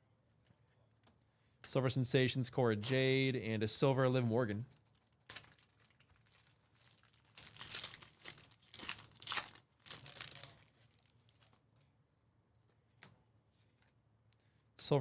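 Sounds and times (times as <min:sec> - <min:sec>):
foil wrapper tearing and crinkling: 0:04.8 - 0:11.6.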